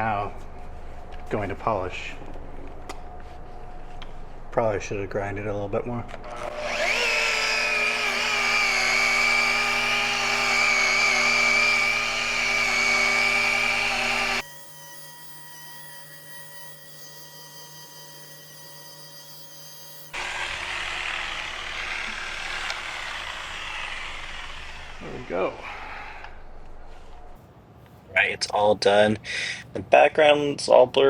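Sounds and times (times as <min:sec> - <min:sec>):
rotary tool whining on glass: 0:06.3 - 0:27.4.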